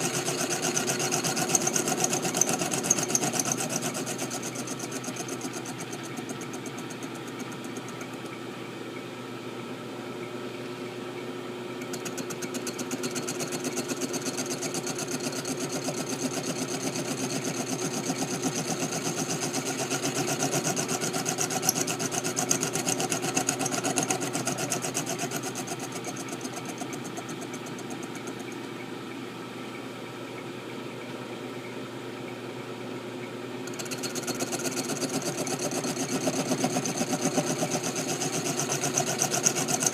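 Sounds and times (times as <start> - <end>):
machine tool running: 0.0 - 8.4, 11.8 - 28.6, 33.6 - 39.9.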